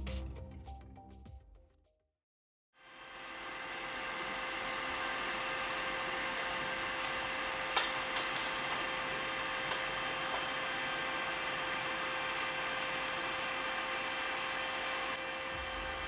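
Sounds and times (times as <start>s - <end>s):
steady hum: 15.1s - 16.0s.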